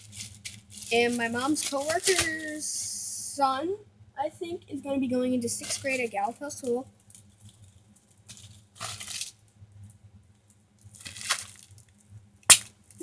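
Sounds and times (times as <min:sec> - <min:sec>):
slime squelching: 0:11.0 - 0:11.6.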